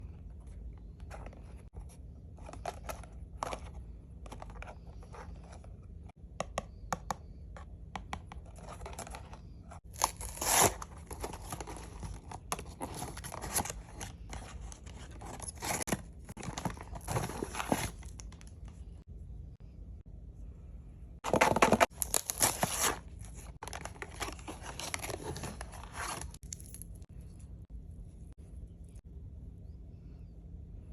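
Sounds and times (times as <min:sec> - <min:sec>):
packaging tearing and crinkling: 0:09.9 - 0:14.0, 0:21.3 - 0:26.8.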